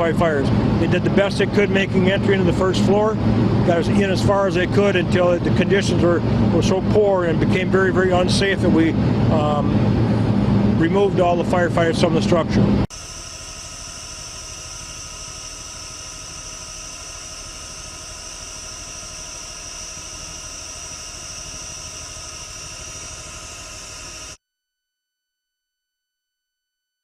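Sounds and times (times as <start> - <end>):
machinery humming with hiss: 8.6 - 24.4.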